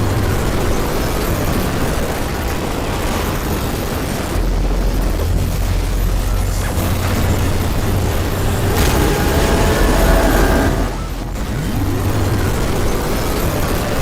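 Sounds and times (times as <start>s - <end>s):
deep rumble: 4.4s - 13.7s.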